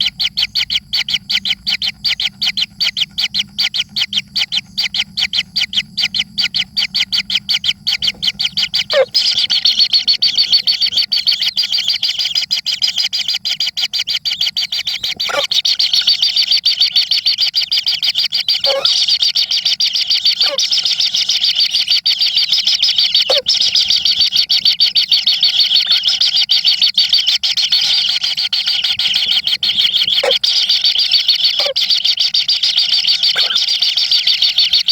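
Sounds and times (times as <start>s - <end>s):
baby birds chirping: 0.0s - 34.9s.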